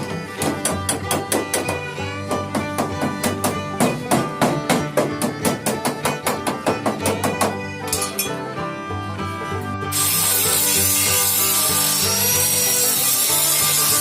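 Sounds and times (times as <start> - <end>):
quick run of plucked notes: 0.0 - 14.0.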